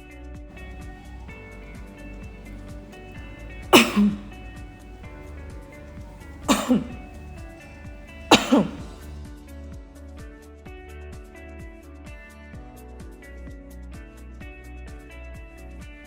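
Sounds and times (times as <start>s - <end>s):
person coughing: 0.5s - 9.1s.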